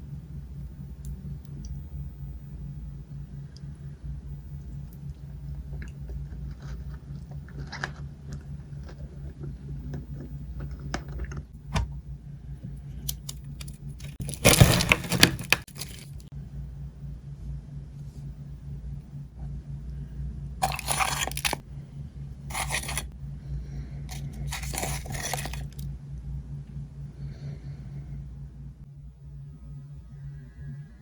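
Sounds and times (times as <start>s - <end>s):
steady low hum: 0.0s - 31.0s
chocolate bar crunching: 5.7s - 11.3s, 13.1s - 16.3s, 20.6s - 21.6s, 22.5s - 23.1s, 24.1s - 25.8s.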